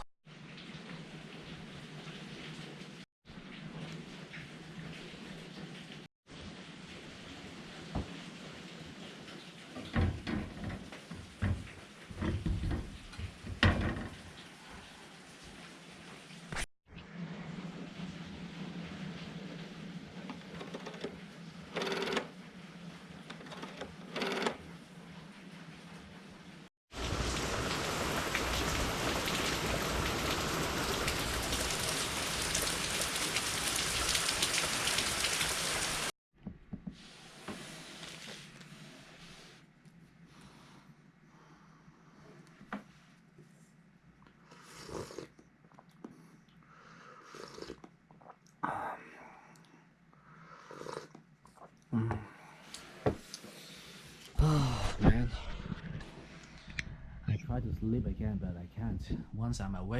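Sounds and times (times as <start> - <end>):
steady rain falling: 0.0 - 13.5, 25.0 - 36.1
knocks and clunks of objects: 9.8 - 14.3
rain hissing: 25.5 - 36.1.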